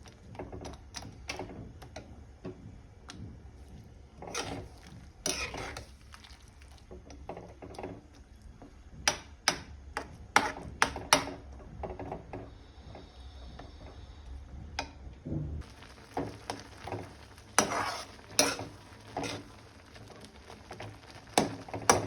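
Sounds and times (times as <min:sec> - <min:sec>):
spoon scraping in pan: 0:04.2 - 0:08.1, 0:09.1 - 0:11.4, 0:15.8 - 0:19.8.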